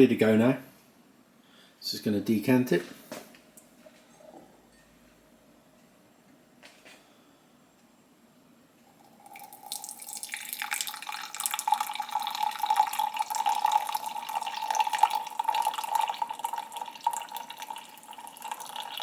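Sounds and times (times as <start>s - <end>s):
coffee pouring from pot: 8.8s - 19.0s.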